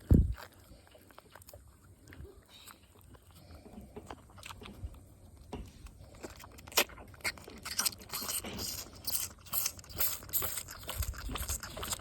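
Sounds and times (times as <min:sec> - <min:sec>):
calf sucking on bottle: 0:05.7 - 0:12.0.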